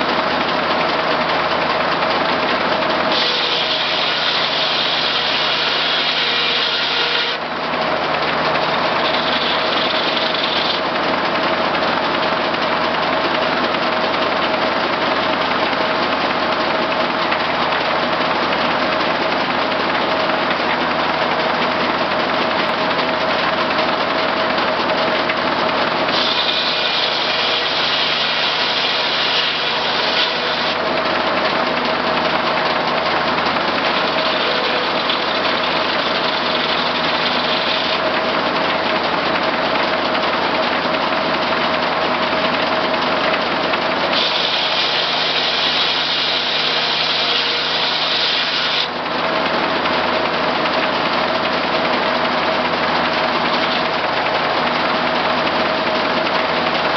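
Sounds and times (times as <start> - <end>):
power unit engine running: 0.0 - 56.9
saw blade cutting log: 2.1 - 12.4, 25.4 - 40.5, 42.2 - 51.6, 53.3 - 56.9.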